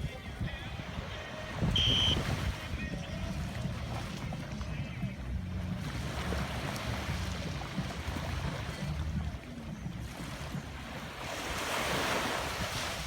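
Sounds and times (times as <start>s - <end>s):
ocean waves washing on shore: 0.0s - 13.0s
steady low rumble: 1.8s - 10.8s.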